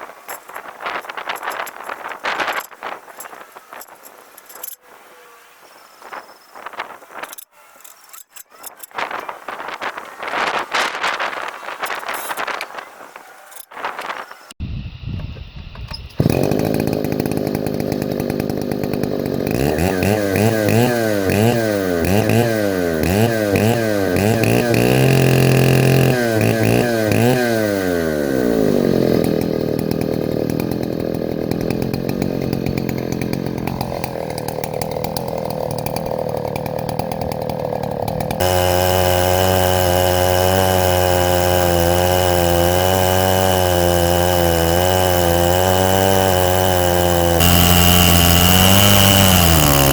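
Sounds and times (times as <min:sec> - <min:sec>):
chainsaw engine revving: 0:16.2 - 0:49.9.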